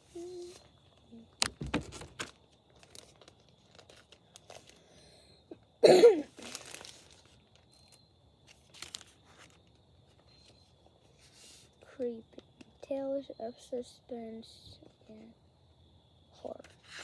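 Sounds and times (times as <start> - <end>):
clicks and rustles of handling: 0.2 - 4.8
person coughing: 5.8 - 6.3.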